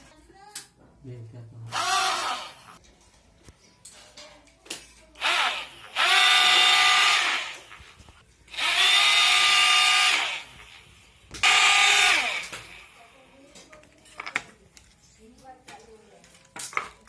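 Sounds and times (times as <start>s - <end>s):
small electric motor whirring: 1.7s - 2.8s, 5.2s - 12.9s.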